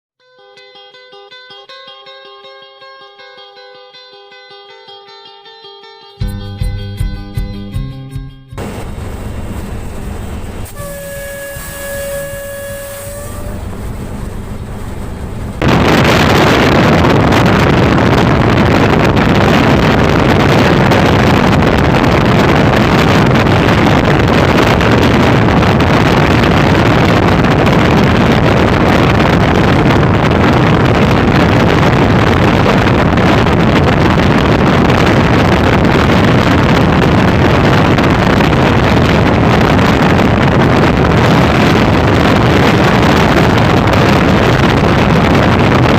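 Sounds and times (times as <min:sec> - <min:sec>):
high-speed train rushing past: 0:08.6 - 0:45.9
locomotive horn: 0:10.6 - 0:14.9.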